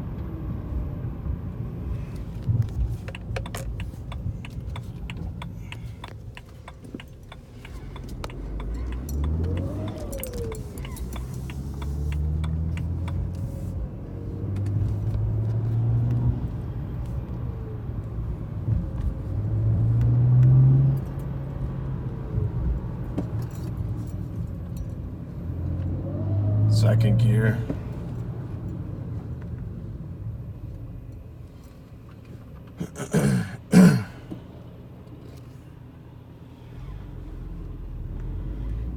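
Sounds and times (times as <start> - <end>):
car engine accelerating: 1.2 - 30.9.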